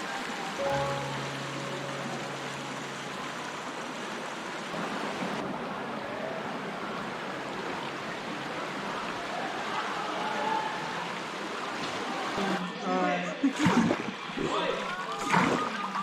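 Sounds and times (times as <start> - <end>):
stream water rushing: 0.0 - 12.8
low held music note: 0.6 - 4.8.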